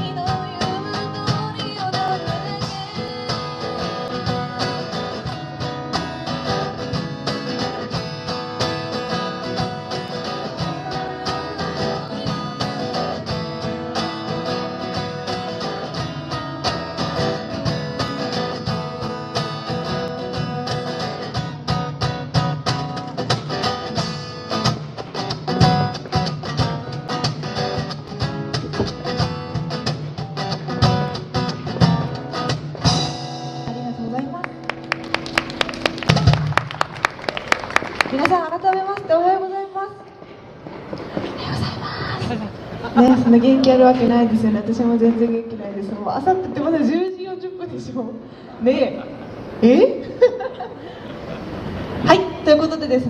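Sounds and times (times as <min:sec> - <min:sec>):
acoustic guitar strumming: 0:00.0 - 0:37.0.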